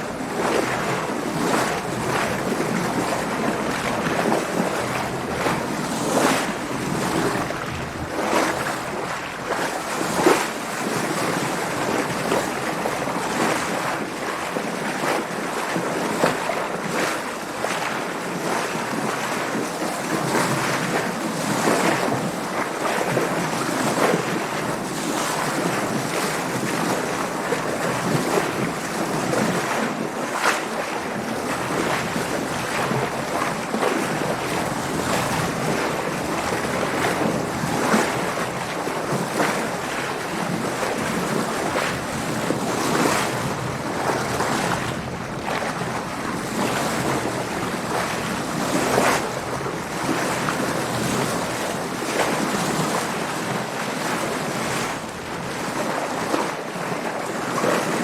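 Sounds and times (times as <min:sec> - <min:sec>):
water splashing against hull: 0:00.0 - 0:58.0.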